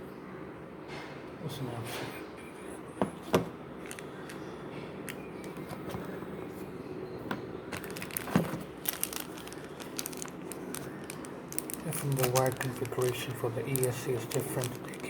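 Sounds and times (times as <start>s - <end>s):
plastic crinkling and rustling: 3.3s - 6.2s, 7.7s - 15.0s.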